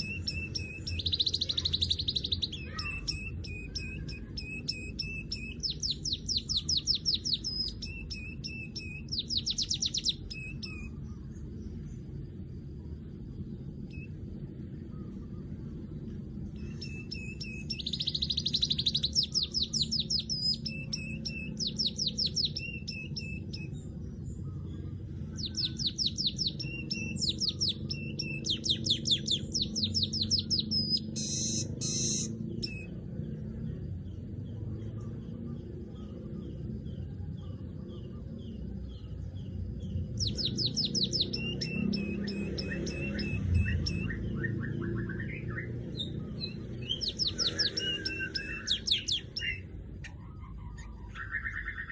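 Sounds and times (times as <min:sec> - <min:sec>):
bird chattering chirps: 0:00.0 - 0:11.0, 0:16.6 - 0:23.8, 0:25.3 - 0:32.9, 0:40.1 - 0:51.9
steady low hum: 0:00.0 - 0:51.9.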